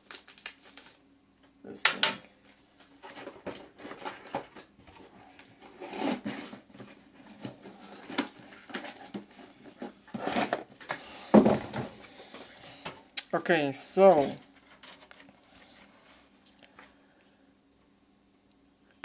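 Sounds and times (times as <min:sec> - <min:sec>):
wires and plastic connector handled: 0:14.0 - 0:17.0.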